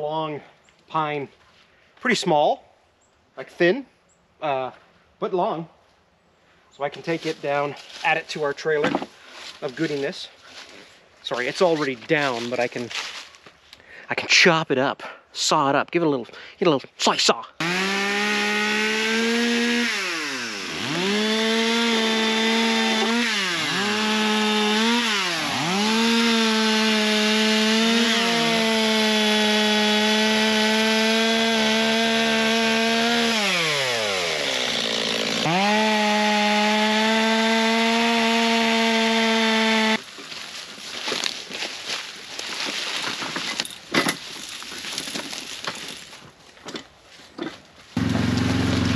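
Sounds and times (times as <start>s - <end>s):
chainsaw sawing: 17.6s - 43.6s, 48.0s - 48.9s.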